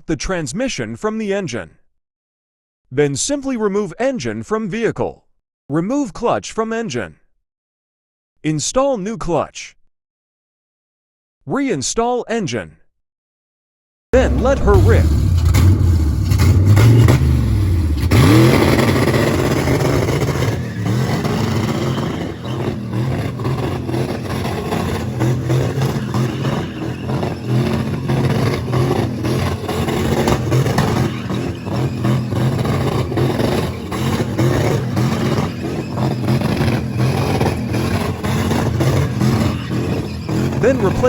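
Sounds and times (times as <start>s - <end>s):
fast dense rattle: 14.2s - 41.0s
race car engine revving: 14.2s - 41.0s.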